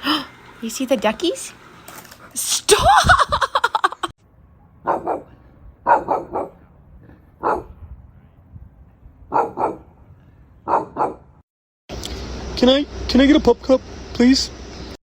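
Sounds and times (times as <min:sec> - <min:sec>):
dog barking: 0:04.8 - 0:06.7, 0:07.4 - 0:07.8, 0:09.3 - 0:09.9, 0:10.6 - 0:11.3.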